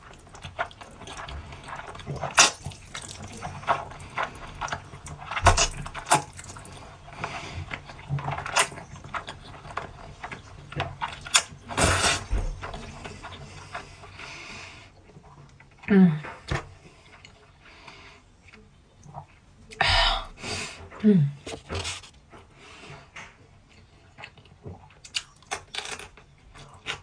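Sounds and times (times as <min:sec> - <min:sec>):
chewing and lip smacks: 0:00.0 - 0:14.2, 0:23.7 - 0:27.0
wet slurping: 0:11.0 - 0:14.5.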